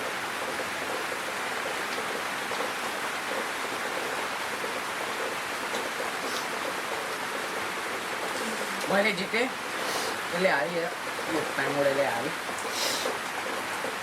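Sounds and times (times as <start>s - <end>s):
steady background hiss: 6.2s - 13.1s.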